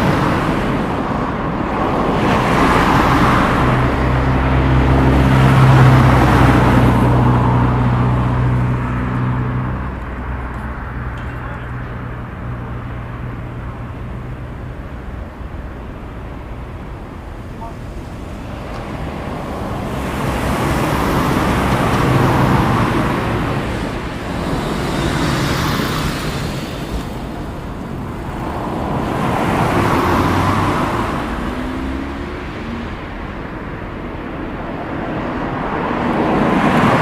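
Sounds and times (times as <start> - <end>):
vehicles passing: 0.0 - 37.0.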